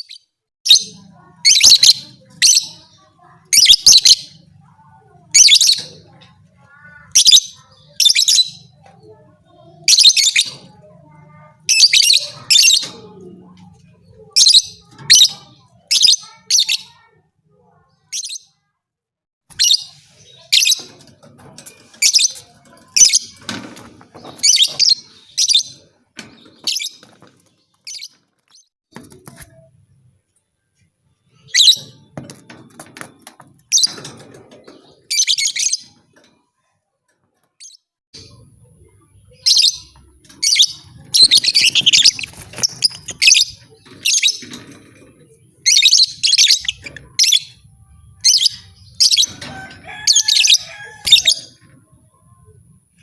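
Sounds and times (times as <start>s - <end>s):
lovebird chirping: 39.3s - 44.5s.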